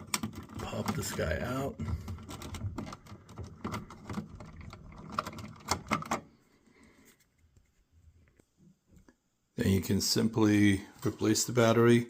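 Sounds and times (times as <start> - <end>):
plastic clicking and rattling: 0.0 - 6.3.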